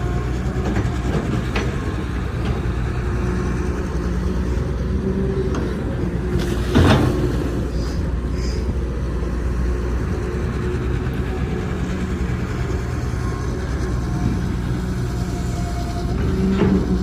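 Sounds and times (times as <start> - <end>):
excavator diesel engine droning: 0.0 - 17.0.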